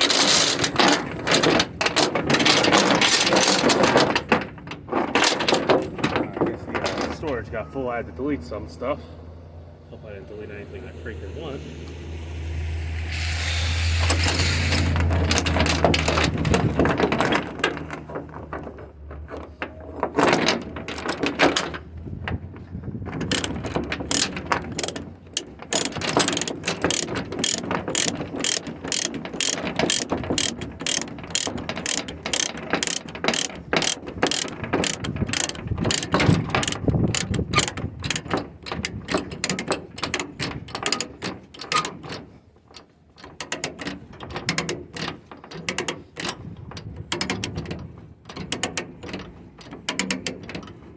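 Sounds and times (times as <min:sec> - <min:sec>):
ratchet clicking: 0:11.6 - 0:18.0, 0:23.2 - 0:38.2.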